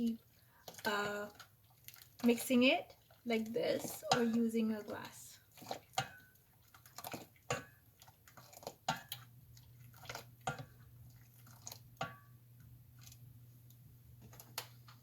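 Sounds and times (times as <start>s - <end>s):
liquid sloshing: 0.0s - 15.0s
utensil clinking against pot: 3.3s - 5.0s, 5.6s - 9.3s, 10.0s - 10.8s
low steady hum: 8.9s - 15.0s.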